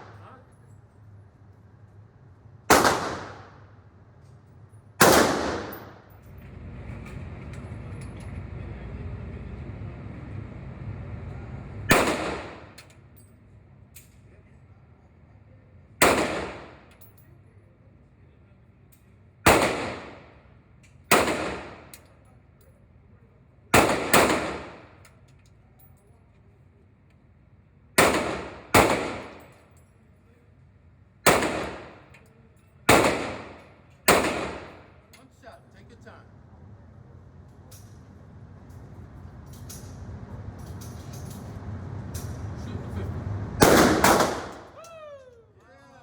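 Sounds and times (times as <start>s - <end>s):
gunshots with echo: 2.7s - 3.6s, 5.0s - 6.0s, 11.9s - 12.8s, 23.8s - 24.8s, 28.0s - 29.4s, 31.3s - 32.0s, 32.9s - 34.8s, 43.6s - 44.8s.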